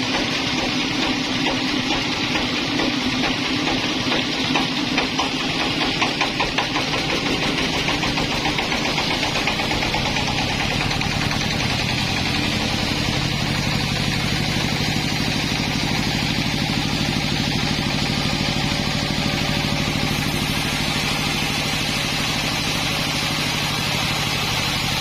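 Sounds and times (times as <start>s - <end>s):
sawmill engine running: 0.0s - 25.0s.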